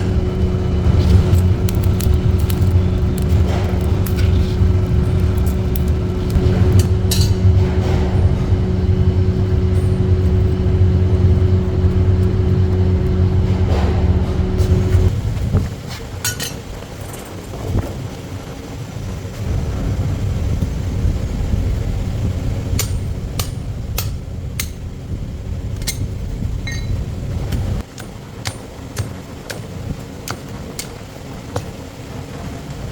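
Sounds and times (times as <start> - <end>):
machine motor humming: 0.0 - 15.6.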